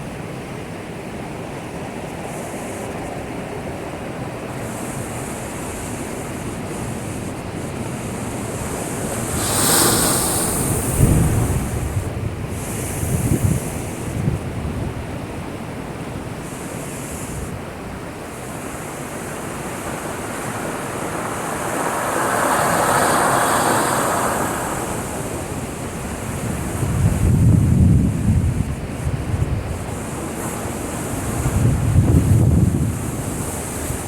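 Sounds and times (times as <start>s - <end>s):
heavy surf breaking: 6.4s - 14.0s, 16.4s - 27.5s.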